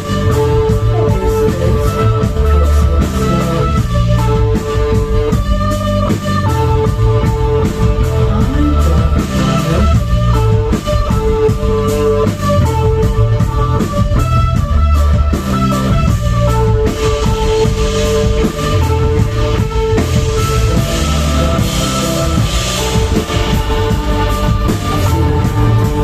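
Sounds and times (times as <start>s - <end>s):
bass guitar: 0.0s - 26.0s
drum kit: 0.0s - 26.0s
electric guitar repeating note: 6.7s - 26.0s.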